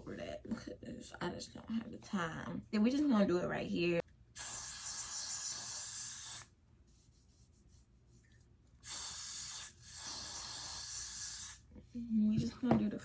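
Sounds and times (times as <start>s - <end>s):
spray hissing in bursts: 8.8s - 11.6s.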